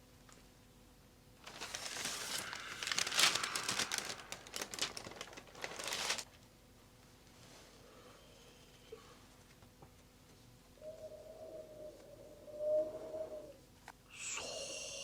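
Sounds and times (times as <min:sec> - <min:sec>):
paper crinkling: 0:01.4 - 0:06.4.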